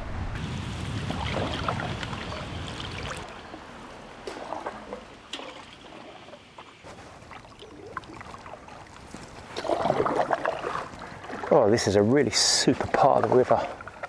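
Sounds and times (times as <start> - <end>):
low rumble: 0.0 - 5.8
paddle stroking through water: 0.4 - 6.9, 9.6 - 11.5
water dripping and splashing: 0.4 - 11.5.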